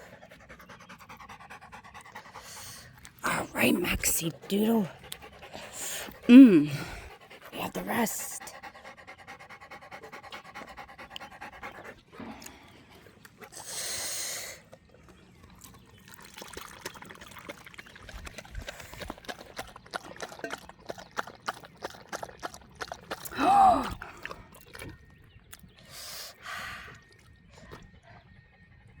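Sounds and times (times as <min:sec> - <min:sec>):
dog panting: 0:00.0 - 0:13.6, 0:16.4 - 0:23.3.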